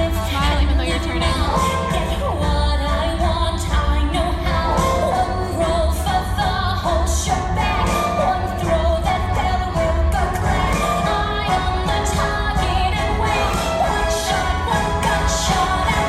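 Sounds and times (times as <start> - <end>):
band with heavy bass: 0.0 - 16.0.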